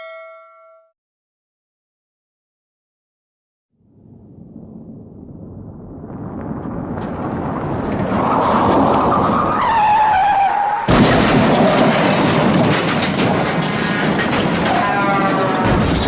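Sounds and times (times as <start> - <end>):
crunching and clattering debris: 6.1 - 9.8, 10.9 - 16.0
car crash impact: 10.8 - 14.8.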